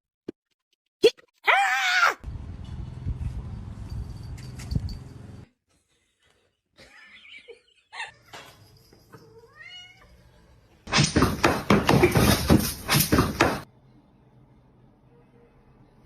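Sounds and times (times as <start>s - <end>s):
cat meowing: 9.3s - 10.2s.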